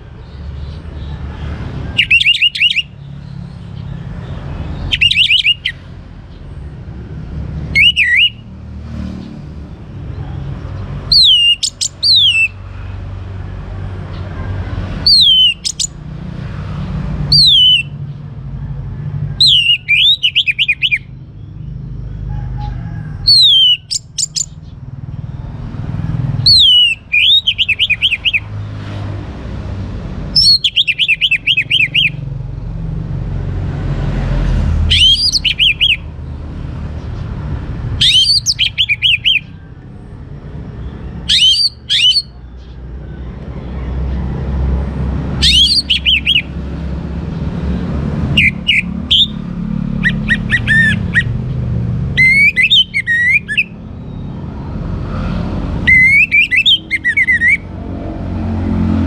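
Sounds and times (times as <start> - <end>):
thrush singing: 1.9 - 3.0, 4.4 - 5.8, 7.5 - 8.4, 11.0 - 12.6, 15.0 - 16.0, 17.3 - 18.0, 19.4 - 21.1, 26.4 - 28.6, 30.4 - 32.3, 34.8 - 36.1, 38.0 - 39.6, 45.0 - 53.9, 55.0 - 59.0.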